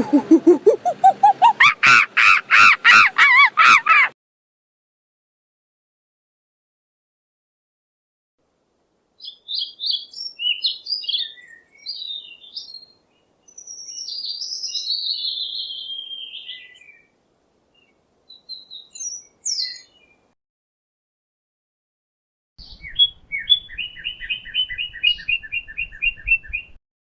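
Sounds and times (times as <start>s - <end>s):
songbird singing: 9.2s - 20.3s, 22.6s - 26.8s.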